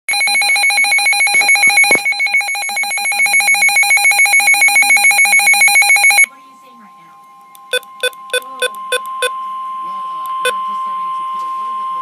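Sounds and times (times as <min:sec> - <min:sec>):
pulsing electronic alert tone: 0:00.1 - 0:06.3, 0:07.6 - 0:09.4.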